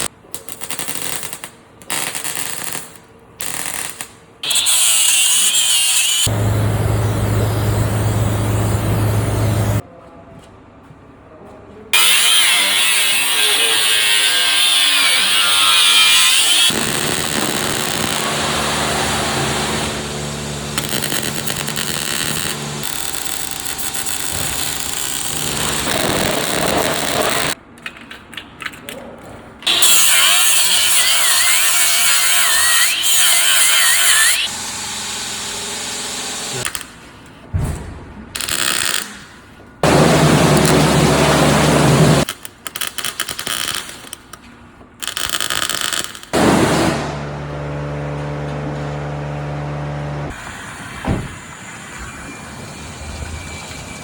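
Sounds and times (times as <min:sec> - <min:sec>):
machine hum: 0:06.2 - 0:09.8, 0:12.0 - 0:27.6, 0:39.8 - 0:42.3, 0:46.4 - 0:54.0
power tool high wavering whine: 0:12.0 - 0:27.6, 0:29.7 - 0:36.7.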